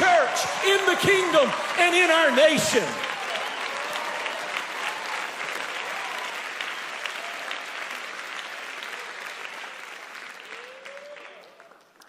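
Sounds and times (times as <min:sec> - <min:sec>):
congregation applauding: 0:00.0 - 0:12.0.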